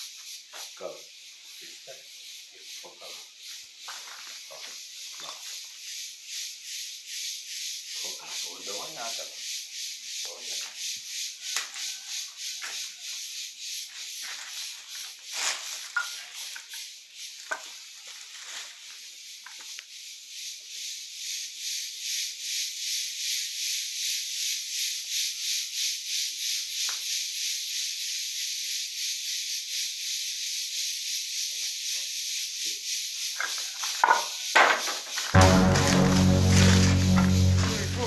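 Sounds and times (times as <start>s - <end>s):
insects buzzing in pulses: 0.1s - 10.2s.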